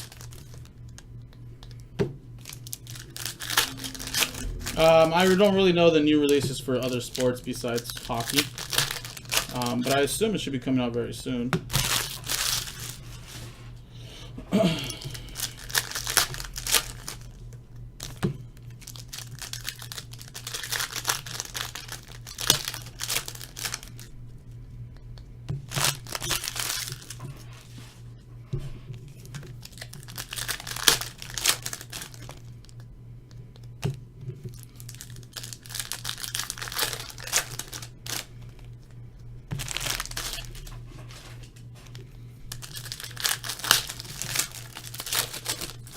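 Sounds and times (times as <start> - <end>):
foil wrappers tearing and crinkling: 0.0 - 0.7, 2.4 - 10.2, 11.7 - 13.4, 14.8 - 17.4, 18.0 - 24.1, 25.7 - 27.5, 29.1 - 32.8, 34.5 - 38.6, 39.5 - 45.9
low steady hum: 0.0 - 45.9.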